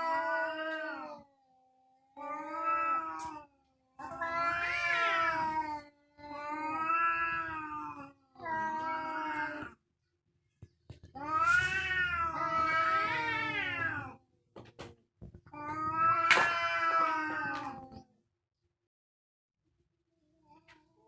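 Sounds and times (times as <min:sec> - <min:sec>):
cat yowling: 0:04.0 - 0:05.7, 0:06.4 - 0:09.7, 0:11.2 - 0:14.2, 0:15.6 - 0:17.8.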